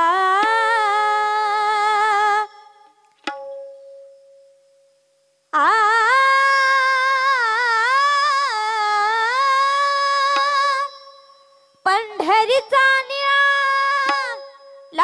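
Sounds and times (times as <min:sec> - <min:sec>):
woman singing wordless phrase: 0:05.6 - 0:11.0, 0:11.9 - 0:15.0.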